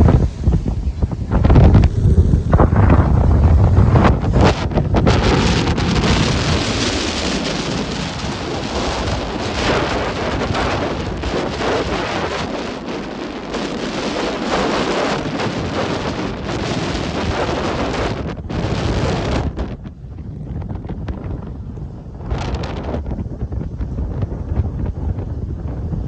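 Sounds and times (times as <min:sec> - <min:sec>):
waves breaking: 0:00.0 - 0:20.0
wind buffeting microphone: 0:00.0 - 0:26.0.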